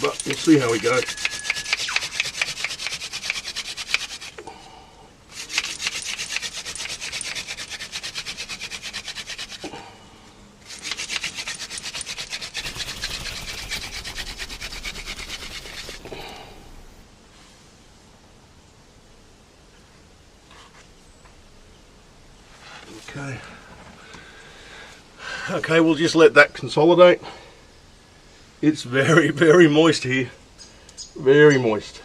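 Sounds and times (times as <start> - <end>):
wooden spindle grinding into wood: 0.0 - 4.4, 5.3 - 9.7, 10.6 - 17.0.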